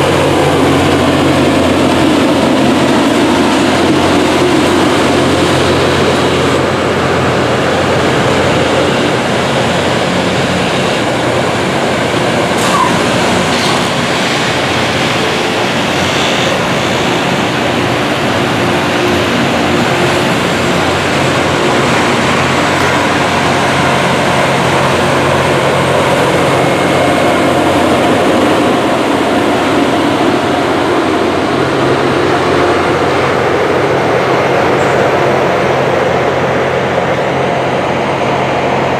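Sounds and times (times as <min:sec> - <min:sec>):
diesel engines humming: 0:00.0 - 0:38.9.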